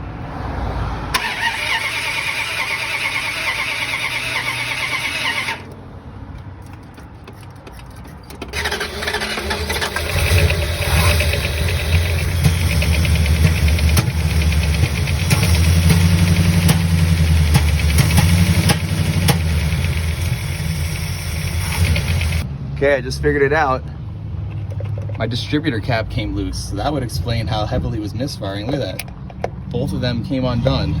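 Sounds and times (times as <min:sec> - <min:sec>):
car starter cranking: 0:01.2 - 0:05.8, 0:06.6 - 0:22.4
misfiring car engine running: 0:01.2 - 0:05.8, 0:06.6 - 0:22.4.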